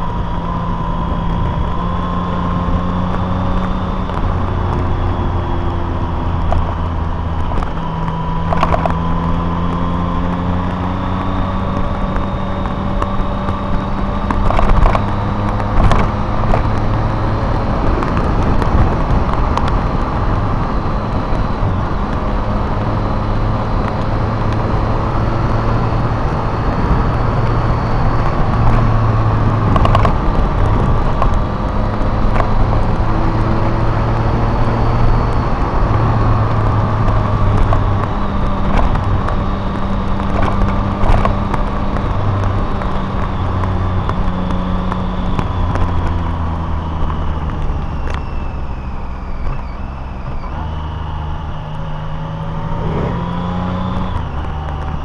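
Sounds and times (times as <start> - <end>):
car engine running: 0.0 - 55.0
road noise: 0.0 - 55.0.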